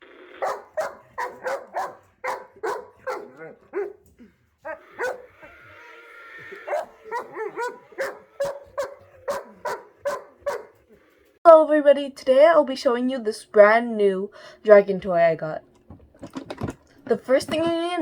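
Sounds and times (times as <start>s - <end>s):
dog barking: 0.4s - 5.6s, 6.6s - 11.0s.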